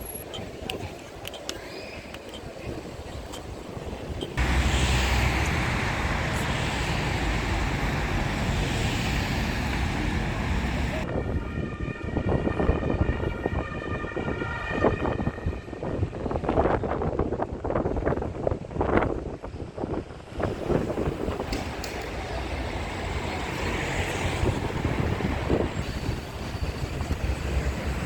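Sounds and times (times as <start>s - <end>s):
street clatter: 0.0s - 11.1s, 19.8s - 28.0s
large vehicle rumbling: 4.0s - 11.1s, 20.0s - 28.0s.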